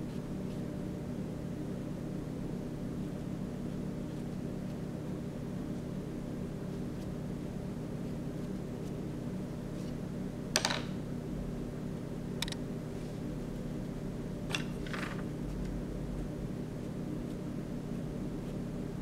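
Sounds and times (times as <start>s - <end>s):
steady low hum: 0.0s - 19.0s.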